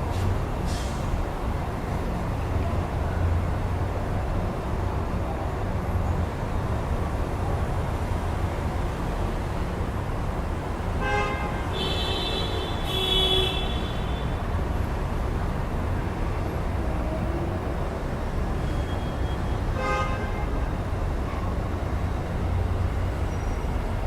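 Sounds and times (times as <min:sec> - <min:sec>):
street traffic rumbling: 0:00.0 - 0:24.0
vehicle horns honking: 0:11.0 - 0:14.4, 0:19.7 - 0:20.6.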